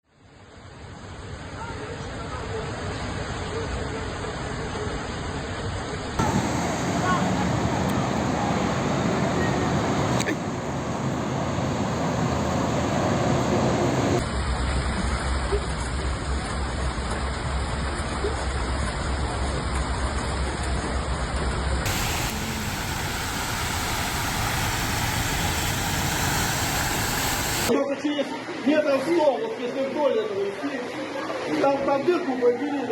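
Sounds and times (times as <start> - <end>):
road traffic: 6.2 - 14.4, 21.8 - 27.7
heavy rain: 6.2 - 20.3, 21.8 - 27.7
rushing floodwater: 6.2 - 20.7, 21.8 - 27.7.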